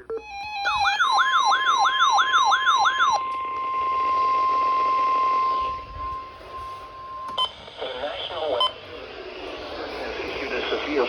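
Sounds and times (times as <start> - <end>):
electronic siren whooping: 0.0 - 8.8
steady warning alarm tone: 0.0 - 10.2.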